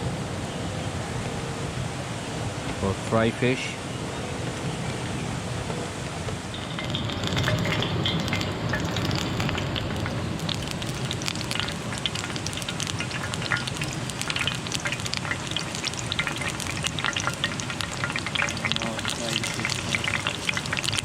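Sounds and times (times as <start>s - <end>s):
fish sizzling in hot oil: 6.4s - 21.0s
oil popping and spitting: 6.6s - 21.0s.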